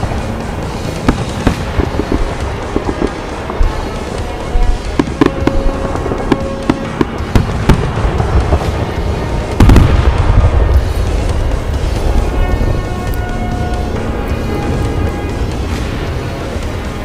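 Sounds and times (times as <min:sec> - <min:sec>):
firework bangs and crackles: 0:00.0 - 0:17.0
heavy firework boom: 0:00.9 - 0:12.9.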